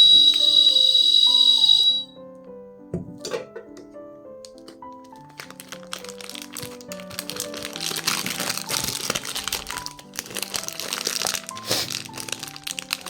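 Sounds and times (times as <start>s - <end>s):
background music: 0.0s - 13.0s
plastic wrapper crinkling: 4.4s - 13.0s.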